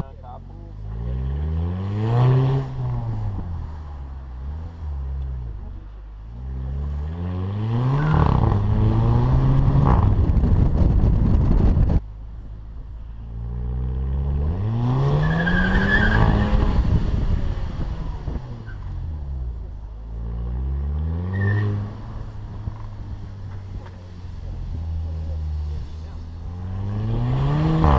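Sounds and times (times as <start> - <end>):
car engine revving hard: 0.9 - 3.5, 26.4 - 27.9.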